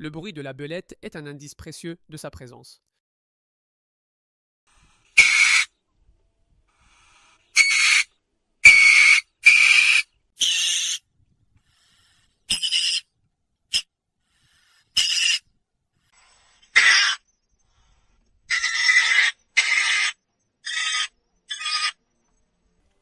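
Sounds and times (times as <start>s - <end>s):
weasel screeching: 5.2s - 5.7s, 7.5s - 11.0s, 12.5s - 13.1s, 14.9s - 15.5s, 16.7s - 17.3s, 18.5s - 22.0s.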